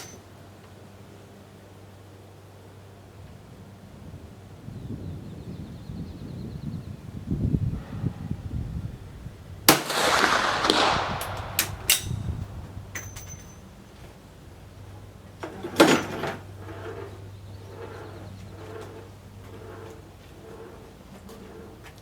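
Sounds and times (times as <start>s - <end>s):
rifle shot with echo: 9.7s - 12.3s.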